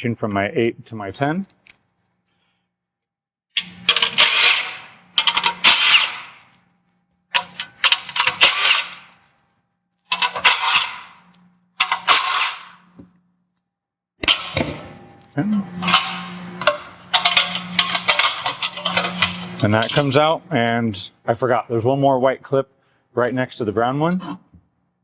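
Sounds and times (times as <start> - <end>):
power ratchet rapid clicking: 3.6 - 6.4, 7.4 - 9.1, 10.1 - 11.0, 11.8 - 12.8.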